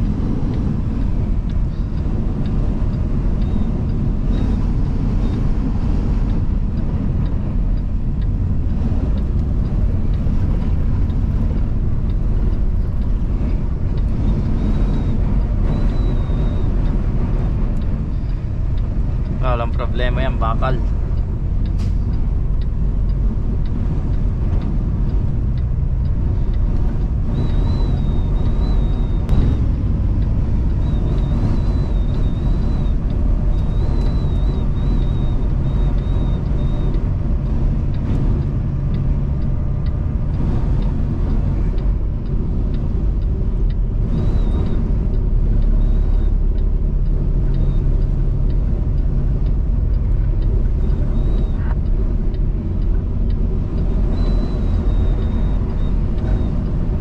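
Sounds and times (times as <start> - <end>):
truck engine rumbling: 0.0 - 57.0
wind buffeting truck: 0.0 - 57.0
faint high whistle: 27.4 - 29.3, 54.1 - 56.5.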